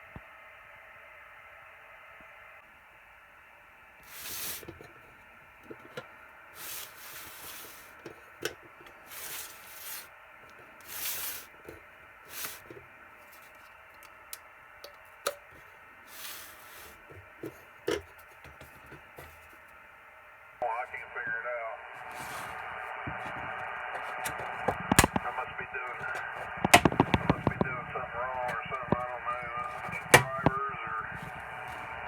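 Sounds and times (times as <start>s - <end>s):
hands rubbing and rasping: 4.0s - 5.0s, 6.6s - 13.6s, 22.0s - 25.2s
sharp clicks and knocks: 23.1s - 25.3s, 25.9s - 27.7s, 28.4s - 30.6s.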